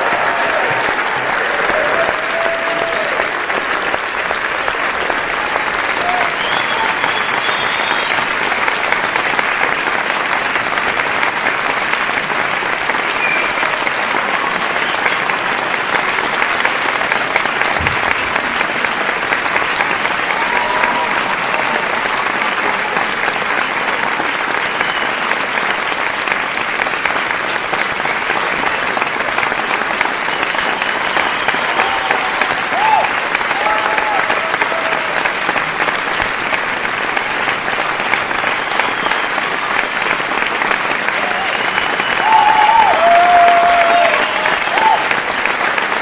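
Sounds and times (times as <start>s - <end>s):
crowd applauding: 0.0s - 46.0s
faint shouts and whoops: 42.2s - 45.0s.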